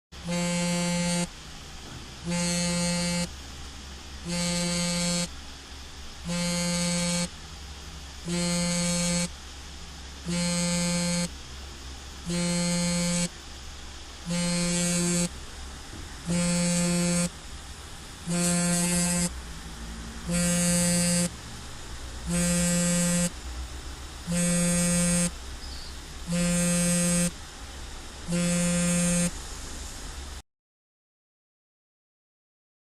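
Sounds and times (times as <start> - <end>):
mobile phone vibrating: 0.2 - 3.4, 4.2 - 5.4, 6.2 - 7.4, 8.2 - 9.4, 10.2 - 11.4, 12.2 - 13.4, 14.2 - 15.4, 16.2 - 17.4, 18.2 - 19.4, 20.2 - 21.5, 22.1 - 23.4, 24.2 - 27.4, 28.2 - 29.4.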